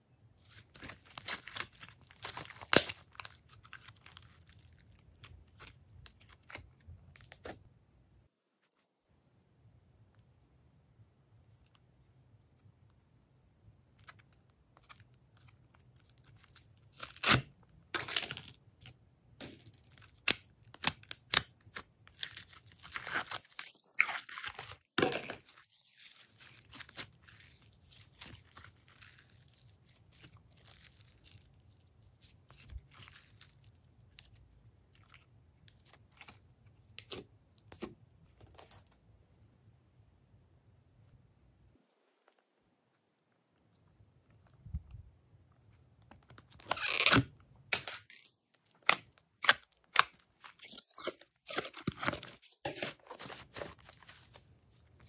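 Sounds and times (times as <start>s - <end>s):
slime crackling and popping: 1.0s - 4.8s.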